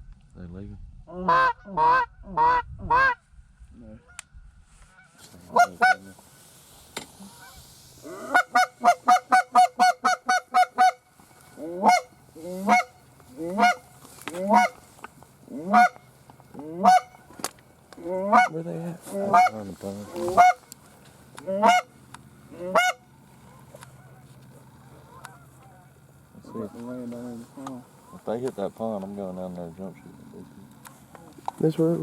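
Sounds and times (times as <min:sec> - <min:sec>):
goose honking: 0:01.1 - 0:03.2, 0:04.9 - 0:06.1, 0:07.2 - 0:17.4, 0:18.0 - 0:20.7, 0:21.4 - 0:28.3.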